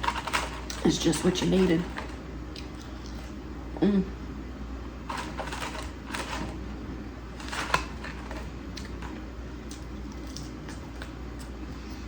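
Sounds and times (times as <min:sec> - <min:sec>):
close chewing mouth sounds: 0:07.7 - 0:11.8.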